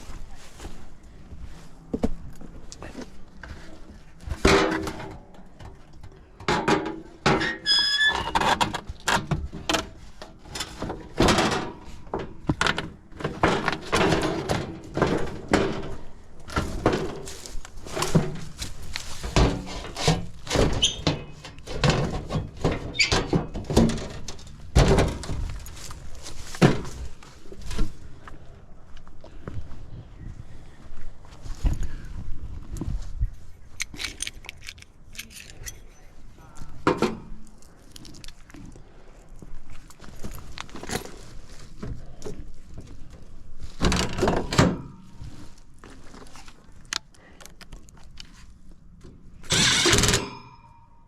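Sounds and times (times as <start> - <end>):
thunks knocks and clatter: 1.9 - 7.6, 8.4 - 28.0, 43.7 - 45.4.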